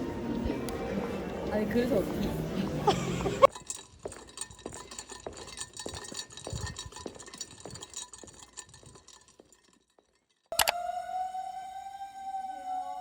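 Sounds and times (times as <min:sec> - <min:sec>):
light clicks and clinks: 0:02.9 - 0:10.7.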